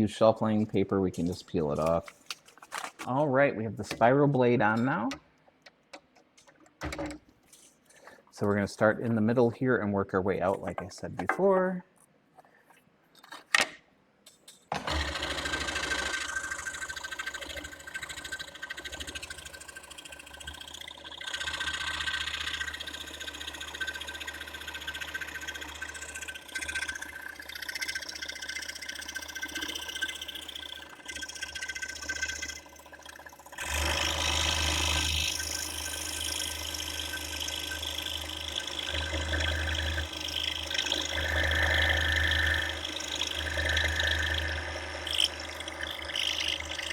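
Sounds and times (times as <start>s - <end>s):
scroll saw cutting wood: 0.5s - 2.2s, 14.7s - 46.9s.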